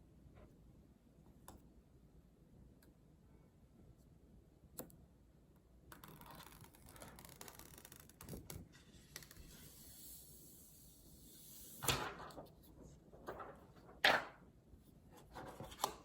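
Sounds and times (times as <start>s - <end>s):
click: 4.8s - 5.0s.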